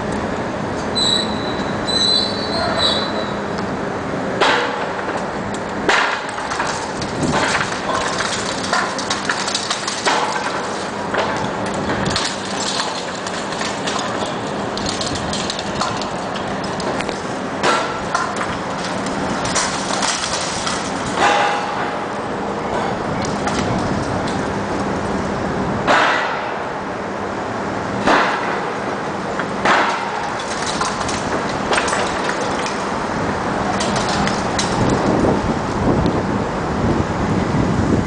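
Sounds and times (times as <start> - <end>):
engine humming: 0.0 - 38.0
bricks crashing down: 5.9 - 21.9, 29.6 - 35.3.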